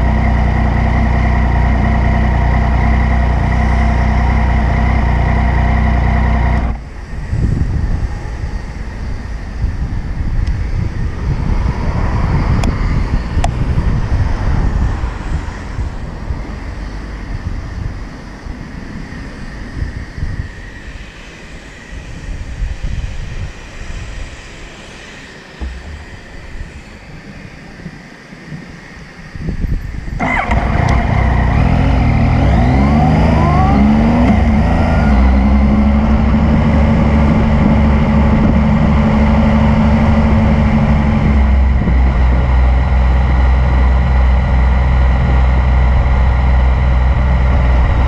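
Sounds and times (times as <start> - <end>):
wind rumble on microphone: 0.0 - 48.0
motorcycle engine idling: 25.6 - 27.0, 30.2 - 36.4.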